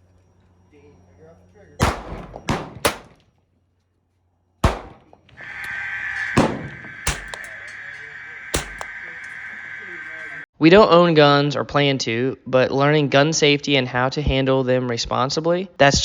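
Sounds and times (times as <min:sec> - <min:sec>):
gunshots: 0:01.8 - 0:03.2, 0:04.6 - 0:09.5
high-pitched hum: 0:05.3 - 0:10.5.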